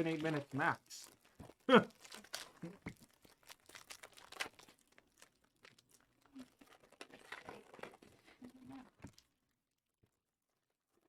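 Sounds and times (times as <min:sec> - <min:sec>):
card packaging crinkling: 0:00.0 - 0:01.3, 0:03.2 - 0:08.4.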